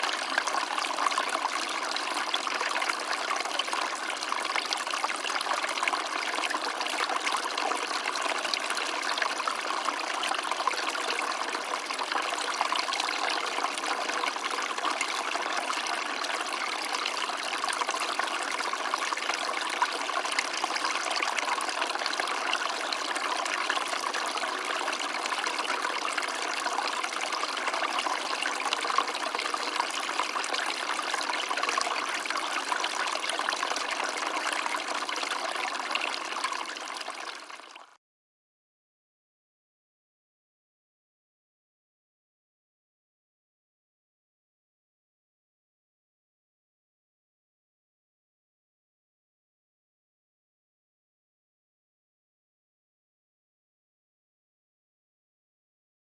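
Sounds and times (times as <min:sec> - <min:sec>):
stream water trickling: 0:00.0 - 0:38.0.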